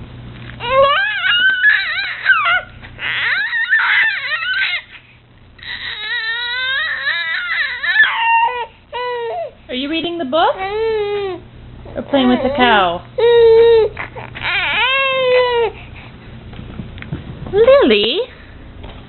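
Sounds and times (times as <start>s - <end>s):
baby squealing and crying: 0.6s - 4.9s, 5.6s - 9.6s, 12.2s - 15.8s.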